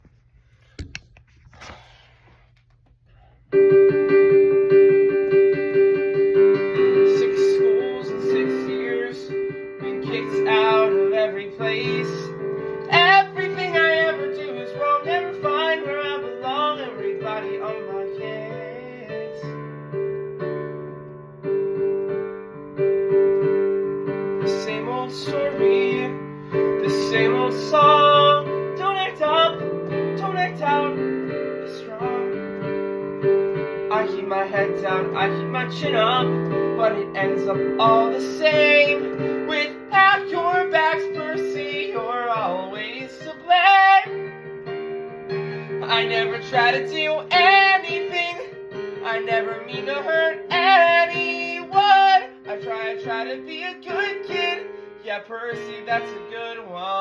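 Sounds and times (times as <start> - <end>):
piano playing chords and melody: 3.5 - 57.0.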